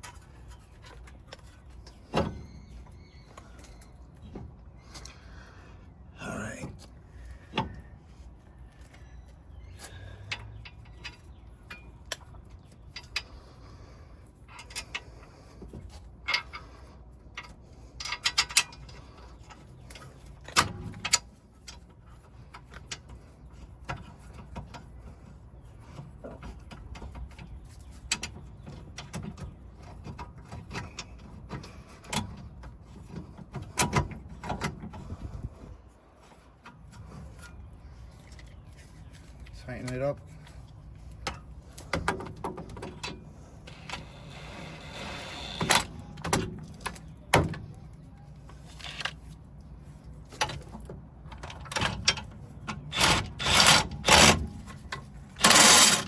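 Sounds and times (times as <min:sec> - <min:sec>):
metal tools clicking and clinking: 0:52.9 - 0:56.0.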